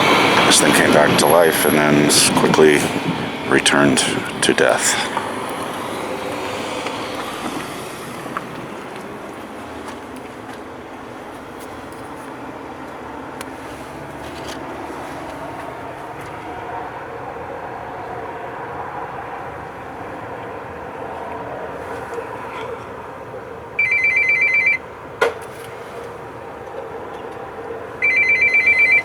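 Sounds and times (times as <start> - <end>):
street background noise: 0.0 - 29.0
payphone trilling ring: 23.8 - 24.8, 28.0 - 29.0.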